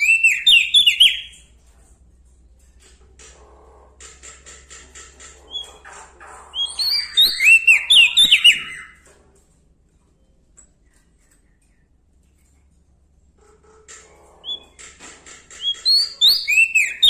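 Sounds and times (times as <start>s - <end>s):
songbird singing: 0.0s - 1.4s, 5.4s - 9.1s, 15.6s - 17.0s.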